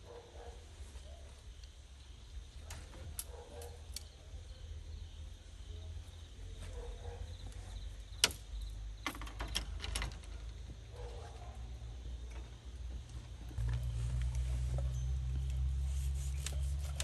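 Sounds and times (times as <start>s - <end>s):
low steady rumble: 13.0s - 17.0s.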